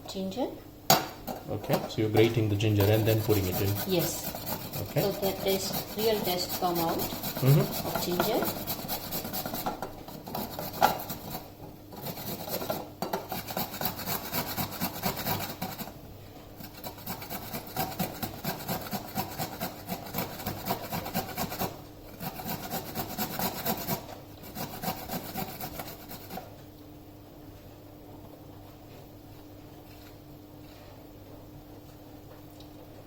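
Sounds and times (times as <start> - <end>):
ginger rasping on grater: 2.3 - 16.0, 16.6 - 26.5.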